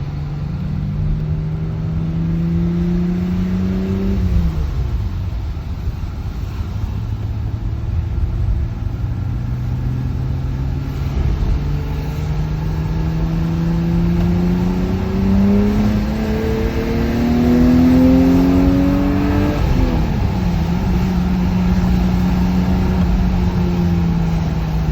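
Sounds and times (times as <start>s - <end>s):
car engine revving: 0.0s - 24.9s.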